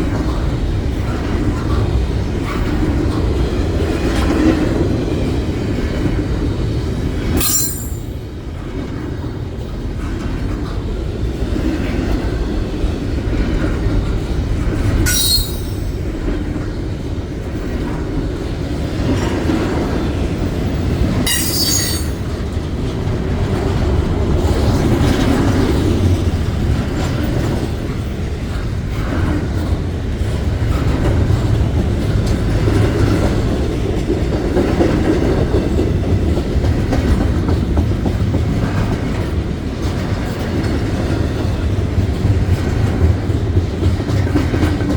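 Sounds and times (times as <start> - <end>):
train cars rumbling and clattering: 0.0 - 44.9
high-pitched wheel squeals: 15.1 - 15.7.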